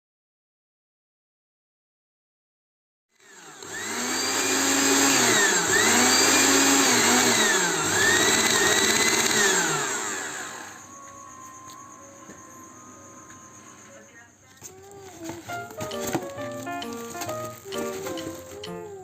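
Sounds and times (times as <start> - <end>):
blender motor running: 3.2 - 11.0.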